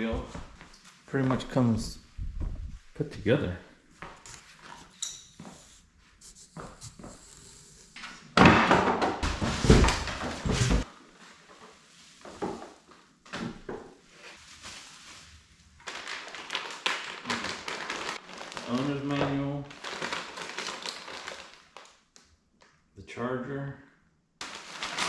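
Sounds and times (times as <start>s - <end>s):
cardboard rustling and scraping: 4.1s - 8.0s, 9.2s - 10.9s.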